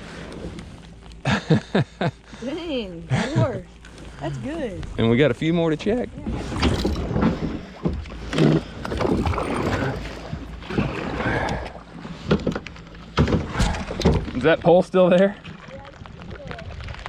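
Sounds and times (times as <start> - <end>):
water splashing around boat: 0.0 - 17.0
sharp bumps on hull: 6.2 - 14.7.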